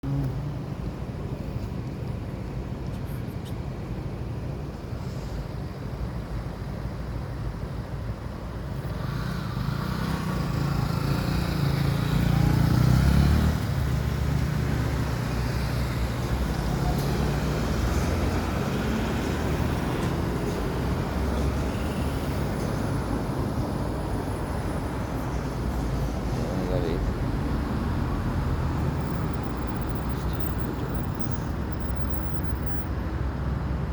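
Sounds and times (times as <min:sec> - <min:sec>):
road traffic rumble: 0:00.0 - 0:33.9
vehicle passing close: 0:09.0 - 0:33.3.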